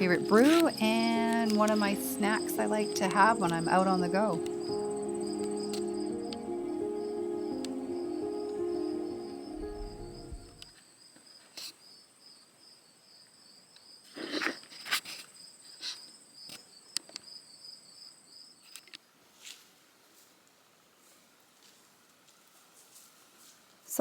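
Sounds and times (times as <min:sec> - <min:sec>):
cricket trilling: 0:00.0 - 0:10.6.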